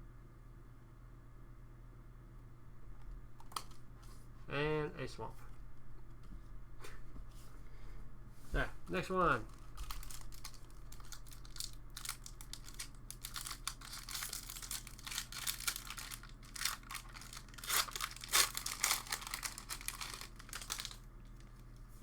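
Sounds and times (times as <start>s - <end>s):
foil wrapper tearing and crinkling: 9.4s - 21.8s.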